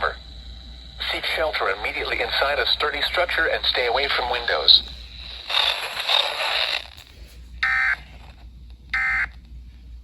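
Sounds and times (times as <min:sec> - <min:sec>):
static hiss: 0:00.0 - 0:07.5
buzzy digital data bursts: 0:00.0 - 0:07.8.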